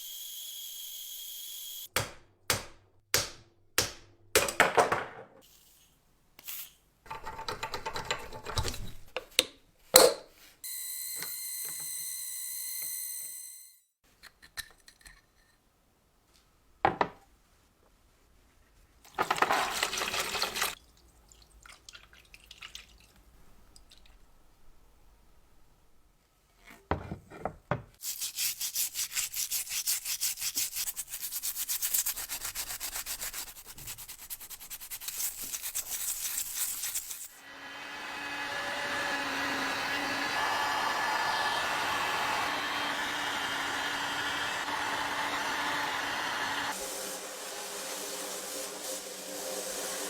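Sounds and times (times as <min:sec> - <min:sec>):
steady hiss: 0:46.7 - 0:50.0
rushing noise bursts: 0:46.8 - 0:50.0.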